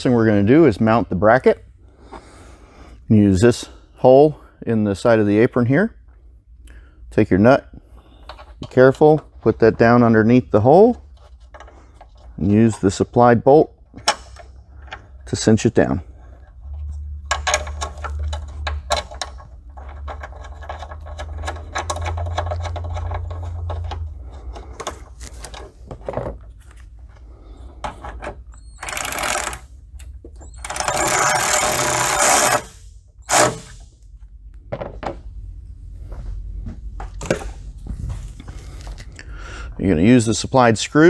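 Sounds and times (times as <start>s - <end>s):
rapid mechanical clicking: 28.8s - 29.7s, 30.6s - 33.8s
small power tool bursts: 30.6s - 33.8s.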